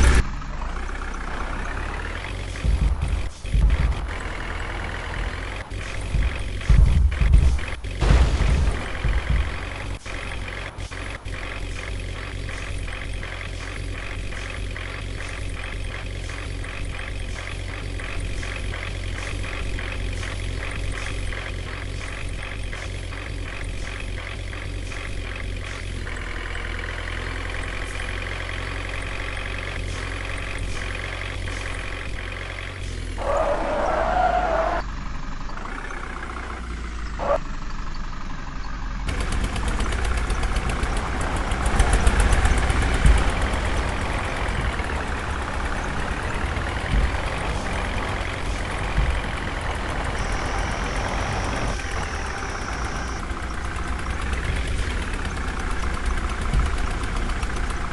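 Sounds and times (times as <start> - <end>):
heavy diesel engine running: 0.0 - 57.9.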